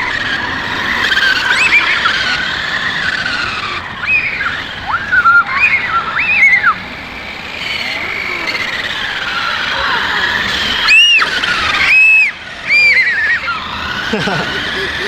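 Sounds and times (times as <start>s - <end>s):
toy car electric motors whining: 0.0s - 15.0s.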